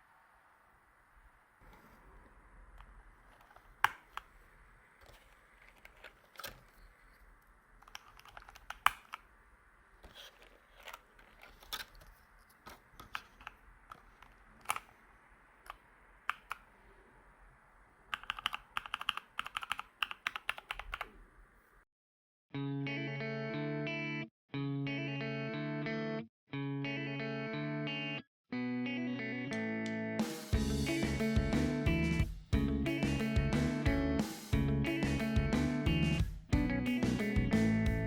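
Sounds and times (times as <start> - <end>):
keyboard keys clicking: 15.7 - 16.6, 18.1 - 21.1.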